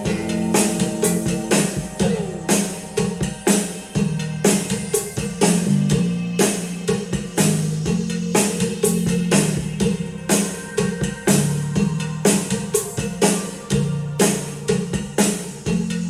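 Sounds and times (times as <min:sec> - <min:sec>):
instrumental music with drums and guitar: 0:00.0 - 0:16.0.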